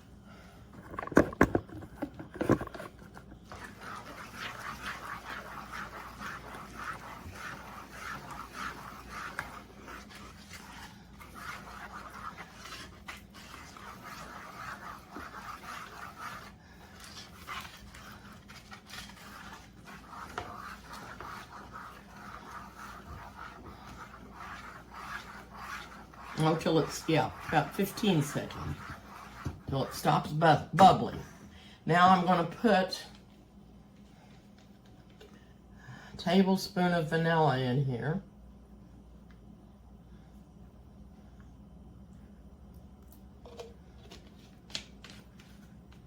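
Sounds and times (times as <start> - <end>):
spoon scraping a bowl: 3.5 - 30.4.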